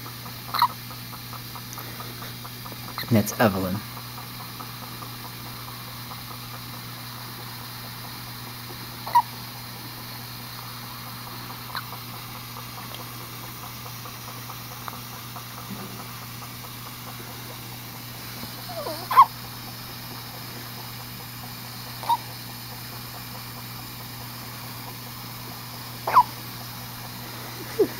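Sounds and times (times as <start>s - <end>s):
steady low hum: 0.0s - 27.9s
baby hiccuping: 18.7s - 19.3s.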